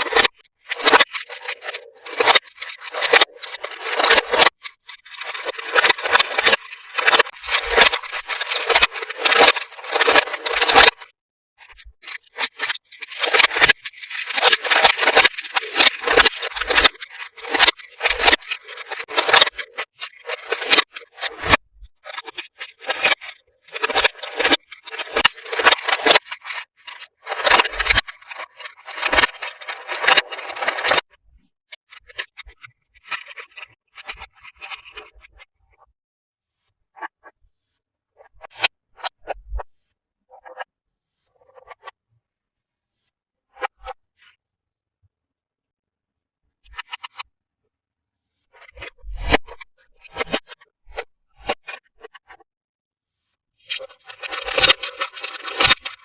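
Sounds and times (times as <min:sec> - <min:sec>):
packaging crinkling and scraping: 0:53.8 - 0:56.0.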